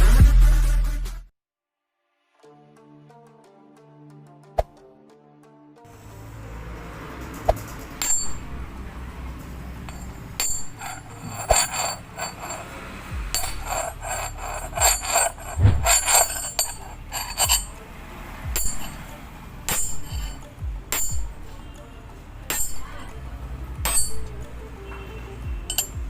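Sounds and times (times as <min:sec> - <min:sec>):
hard objects clinking: 0:07.6 - 0:08.6, 0:09.8 - 0:17.8, 0:18.5 - 0:19.1, 0:19.7 - 0:21.4, 0:22.5 - 0:23.1, 0:25.7 - 0:26.0
dull thuds: 0:13.2 - 0:17.7.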